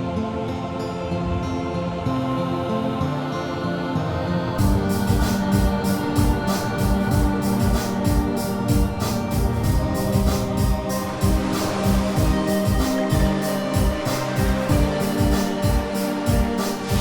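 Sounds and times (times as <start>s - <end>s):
organ-like keyboard chords: 4.6s - 17.0s
steady beat: 4.6s - 17.0s.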